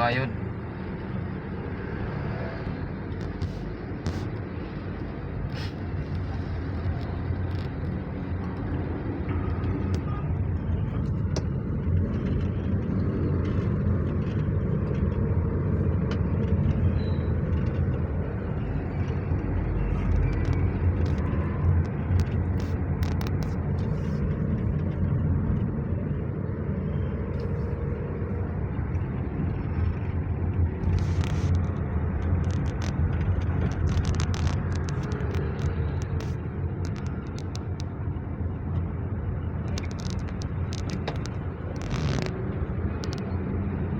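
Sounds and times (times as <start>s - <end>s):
car engine and road rumble: 0.0s - 43.9s.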